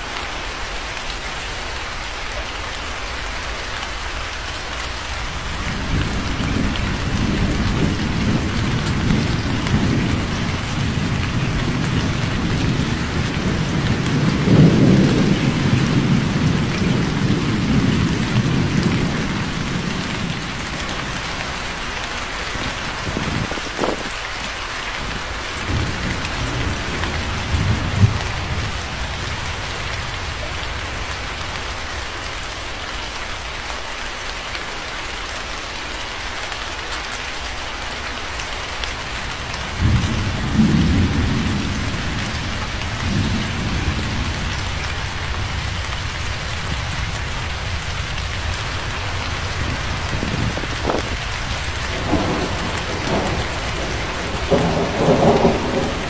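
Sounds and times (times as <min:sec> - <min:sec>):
heavy rain hissing: 0:00.0 - 0:56.0
thunder rolling: 0:05.4 - 0:24.2, 0:25.6 - 0:31.1, 0:39.6 - 0:56.0
sharp thunder crack: 0:49.5 - 0:56.0.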